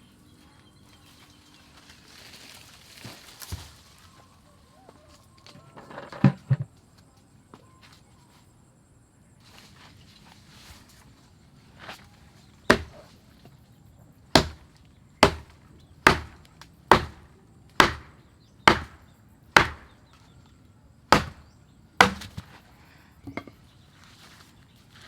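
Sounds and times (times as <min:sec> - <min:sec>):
tool chopping strikes: 0:12.6 - 0:13.1, 0:14.3 - 0:20.0, 0:21.1 - 0:22.6.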